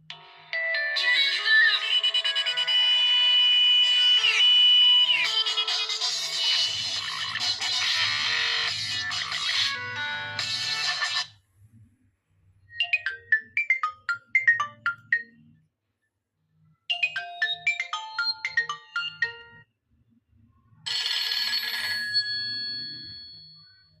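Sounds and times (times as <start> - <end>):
ringtone chord ringing: 0.1 - 11.3, 12.7 - 15.5, 16.9 - 19.7, 20.9 - 24.0
mobile phone ringtone beeps: 12.8 - 15.5, 16.9 - 19.7, 20.9 - 24.0.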